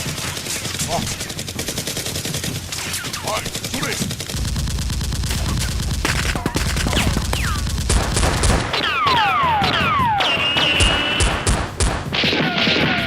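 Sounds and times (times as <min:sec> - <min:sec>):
rapid gunfire: 0:00.0 - 0:13.0
falling whistling tones: 0:08.9 - 0:11.2.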